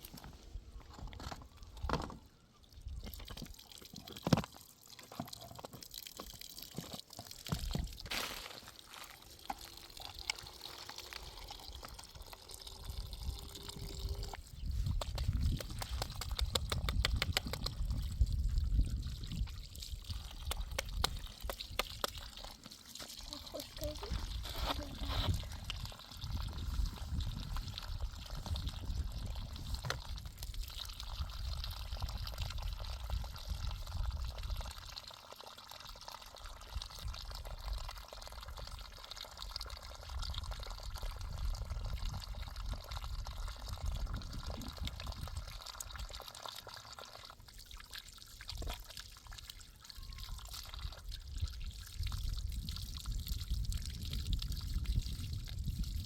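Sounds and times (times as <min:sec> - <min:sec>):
water pouring and trickling: 0:00.0 - 0:56.0.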